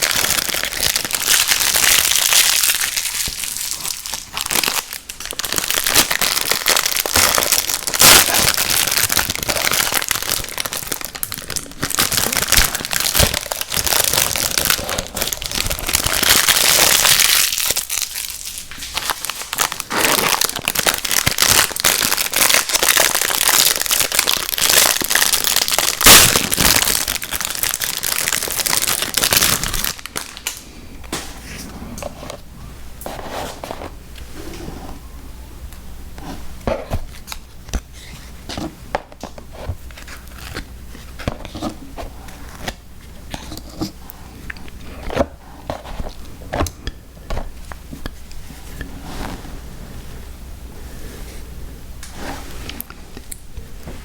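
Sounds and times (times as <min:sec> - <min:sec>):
plastic packaging crinkling: 0:00.0 - 0:30.6.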